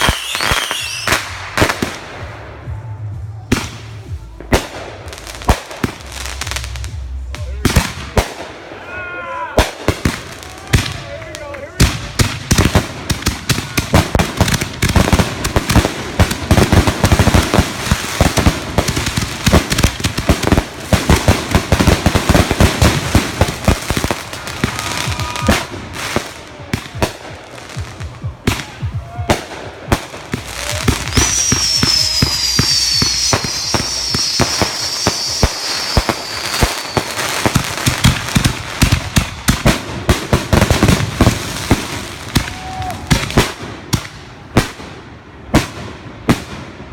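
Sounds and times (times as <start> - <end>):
fireworks crackling and banging: 0.0 - 46.9
high descending whistle: 31.1 - 37.1.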